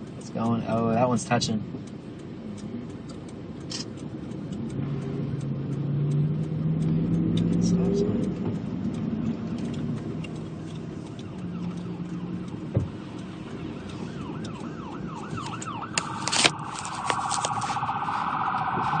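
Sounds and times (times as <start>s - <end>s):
car and road rumble: 0.0s - 19.0s
emergency vehicle siren: 5.3s - 19.0s.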